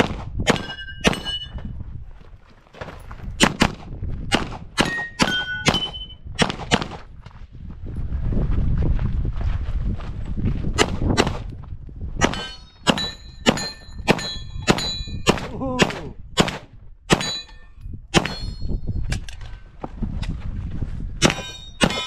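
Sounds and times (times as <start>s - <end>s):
pistol shots: 0.0s - 1.4s, 3.4s - 7.0s, 12.2s - 17.5s, 21.2s - 22.0s
steel plate ringing: 12.3s - 15.3s, 17.2s - 18.8s.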